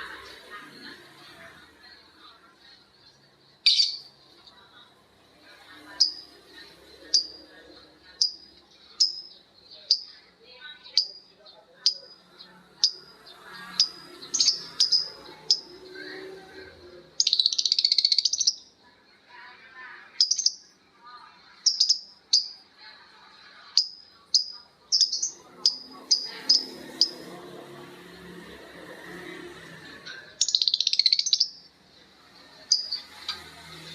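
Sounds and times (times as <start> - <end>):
birds chirping: 0.0 - 33.9
bird chattering trill: 3.7 - 4.1, 6.0 - 6.3, 7.0 - 7.5, 8.2 - 10.2, 10.8 - 15.8, 17.2 - 18.6, 20.2 - 20.7, 21.6 - 22.6, 23.7 - 27.2, 30.4 - 31.7, 32.7 - 33.1.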